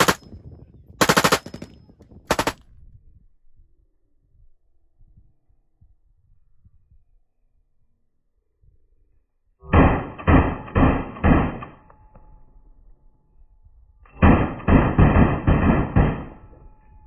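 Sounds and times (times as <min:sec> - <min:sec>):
semi-automatic gunshots: 0:00.0 - 0:00.2, 0:01.0 - 0:01.7, 0:02.3 - 0:02.6.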